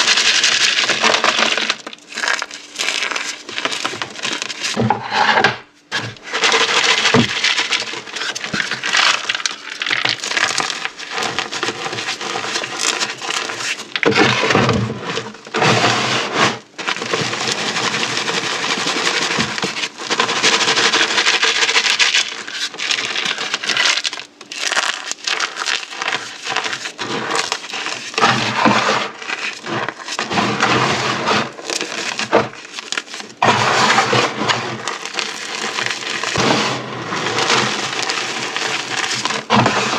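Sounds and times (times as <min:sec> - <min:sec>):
chalk and beads crunching: 0:00.0 - 0:39.9.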